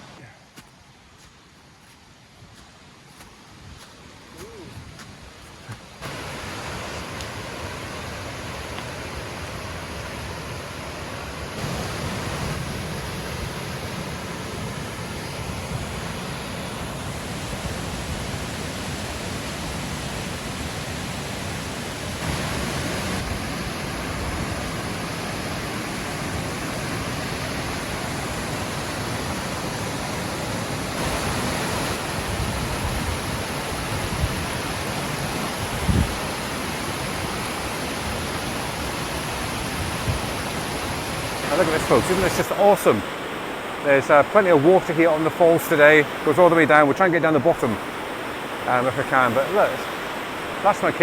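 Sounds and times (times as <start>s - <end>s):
waterfall rushing: 3.1s - 51.0s.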